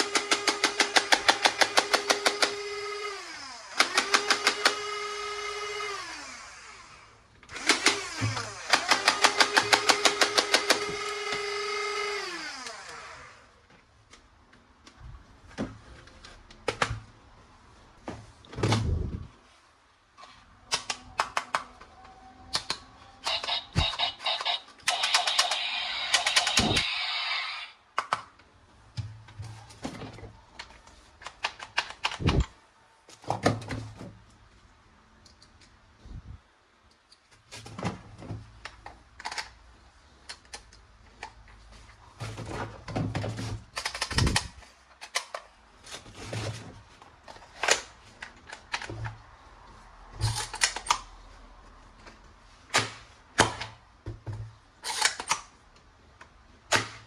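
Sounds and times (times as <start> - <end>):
plastic toy gun clicks and snaps: 22.5 - 27.0, 43.8 - 45.5, 54.8 - 55.5, 56.7 - 57.0.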